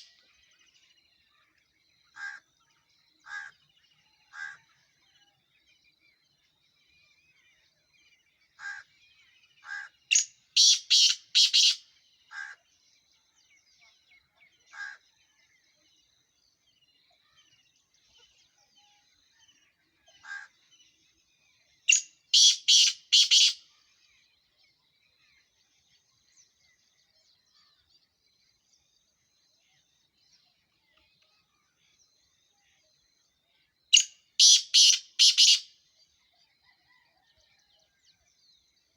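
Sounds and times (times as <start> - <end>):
bird calling harsh notes: 10.1 - 11.8, 21.9 - 23.6, 34.0 - 35.7.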